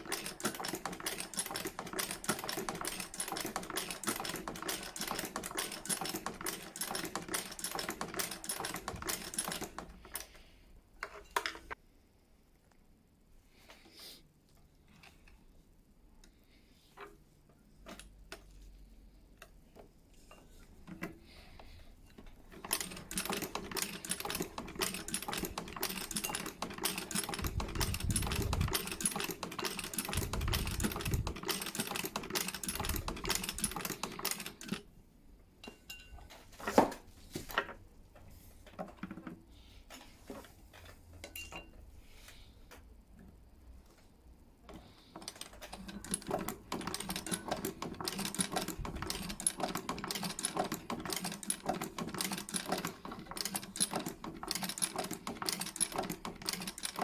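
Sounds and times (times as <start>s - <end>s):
sewing machine clattering: 0.0s - 10.4s, 20.6s - 34.9s, 44.7s - 57.0s
sewing machine clicks: 0.0s - 10.4s, 20.8s - 34.9s, 44.6s - 57.0s.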